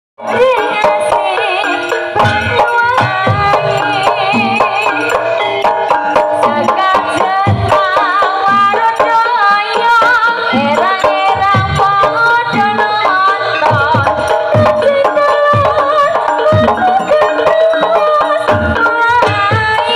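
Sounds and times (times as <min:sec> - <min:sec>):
wavering melodic line: 0:00.2 - 0:07.4, 0:10.5 - 0:18.4
hand drum strokes: 0:00.3 - 0:19.9.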